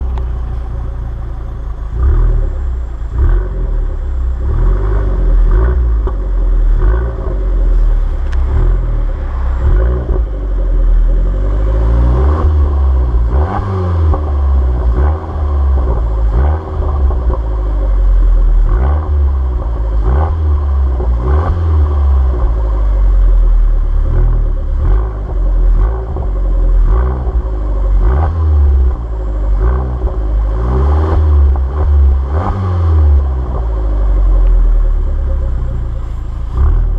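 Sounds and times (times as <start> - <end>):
car engine revving: 0.0 - 36.9.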